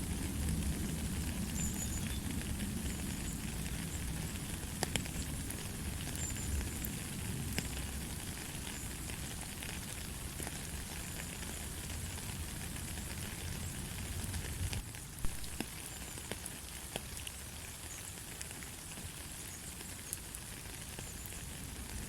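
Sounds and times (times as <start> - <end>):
light steady rain: 0.0 - 22.0.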